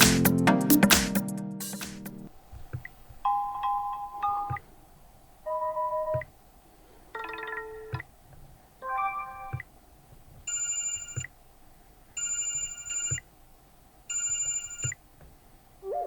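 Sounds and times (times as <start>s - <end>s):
phone ringtone melody: 8.8s - 9.6s, 10.5s - 11.3s, 12.2s - 13.2s, 14.1s - 15.0s.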